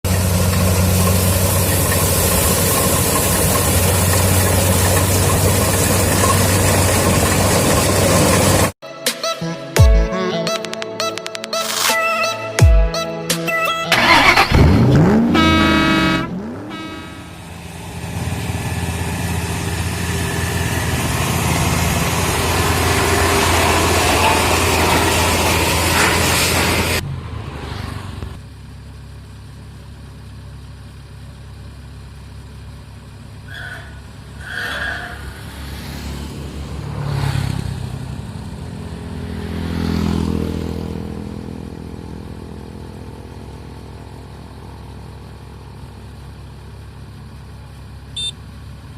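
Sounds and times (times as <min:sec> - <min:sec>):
diesel engine running: 0:00.0 - 0:08.8, 0:13.9 - 0:48.9
brief pitched sound: 0:13.6 - 0:17.5.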